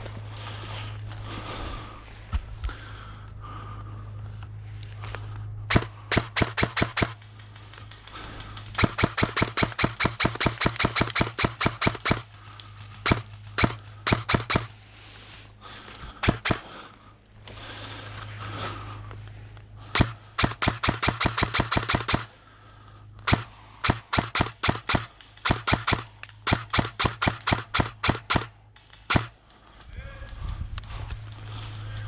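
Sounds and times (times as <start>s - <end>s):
steady low hum: 0.0s - 32.0s
airsoft gun shots: 5.7s - 7.2s, 8.7s - 12.4s, 13.0s - 14.8s, 16.2s - 16.8s, 19.9s - 22.4s, 23.2s - 29.4s.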